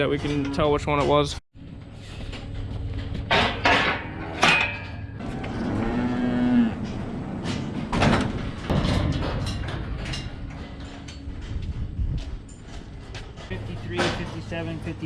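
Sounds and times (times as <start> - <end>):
cow mooing: 4.0 - 7.1.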